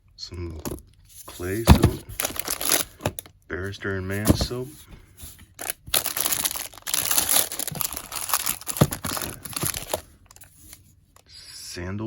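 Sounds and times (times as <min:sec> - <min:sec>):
packaging crinkling and rustling: 0:01.3 - 0:03.3, 0:04.2 - 0:10.8.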